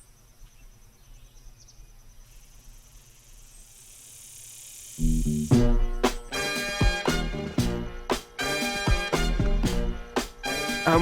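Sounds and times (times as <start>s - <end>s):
insect trilling: 2.1s - 5.5s
hiss: 2.3s - 5.5s
upbeat funk music: 5.1s - 11.0s.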